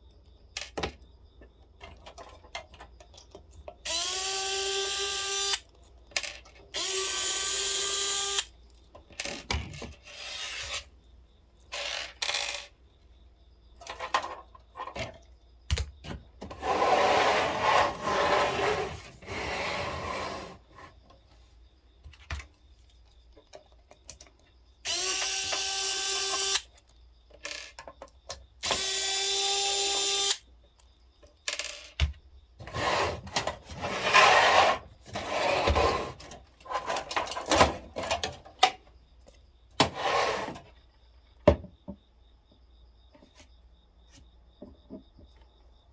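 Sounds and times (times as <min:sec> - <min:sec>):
rustling and clattering of parts: 0:01.8 - 0:04.0, 0:08.7 - 0:11.0, 0:13.8 - 0:16.6, 0:26.4 - 0:28.4, 0:31.2 - 0:40.8
cordless drill whining: 0:03.8 - 0:05.6, 0:06.8 - 0:08.5, 0:24.9 - 0:26.7, 0:28.6 - 0:30.4.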